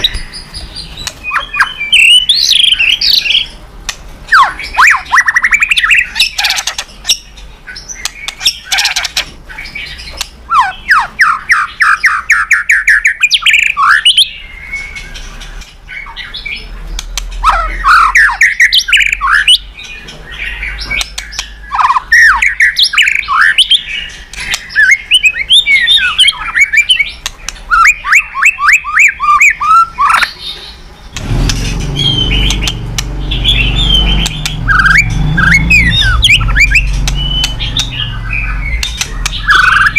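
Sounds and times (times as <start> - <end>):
songbird singing varied song: 0.0 - 3.6, 4.2 - 39.9
low hum: 31.1 - 39.9.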